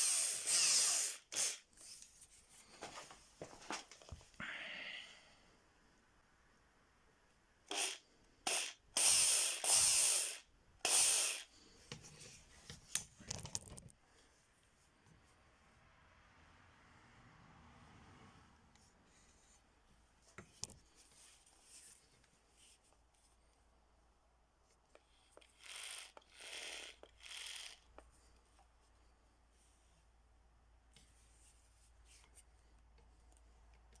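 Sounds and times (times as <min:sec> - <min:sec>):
faint handling noises: 0:01.8 - 0:04.4.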